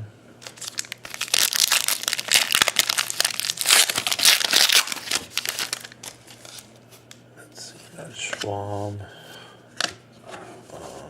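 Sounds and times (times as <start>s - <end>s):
foil wrapper crinkling: 0.4s - 6.8s.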